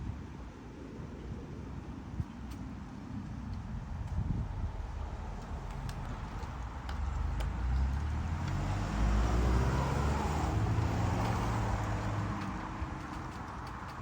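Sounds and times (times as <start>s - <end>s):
car driving past: 5.3s - 13.2s.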